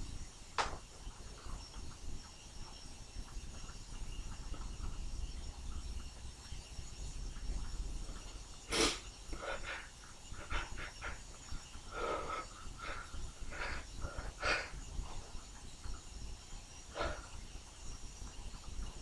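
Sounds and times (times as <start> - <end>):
sniffs and breaths: 8.7 - 15.3, 16.9 - 17.4.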